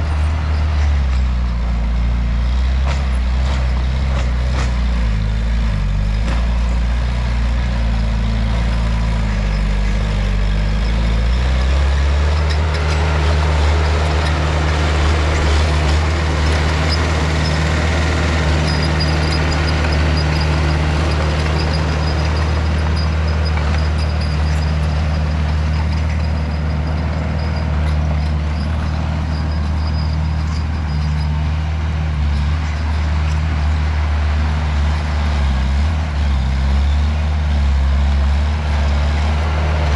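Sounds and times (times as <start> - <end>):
heavy diesel engine under load: 0.0 - 39.9.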